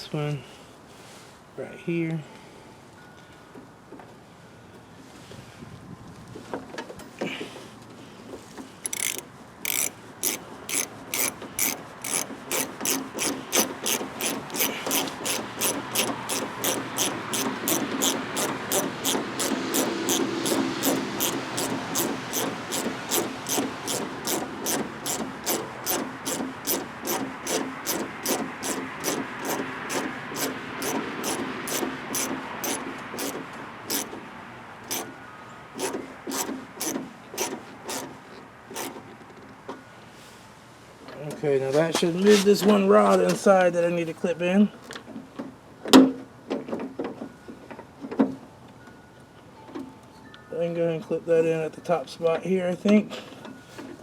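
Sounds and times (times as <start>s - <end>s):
socket ratchet clicking: 8.8s - 34.1s, 34.9s - 35.1s, 35.8s - 38.1s.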